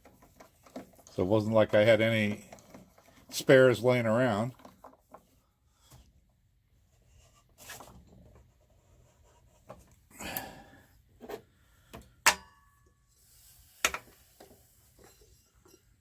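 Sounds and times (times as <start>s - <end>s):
light clicks and knocks of parts: 0.0s - 6.2s.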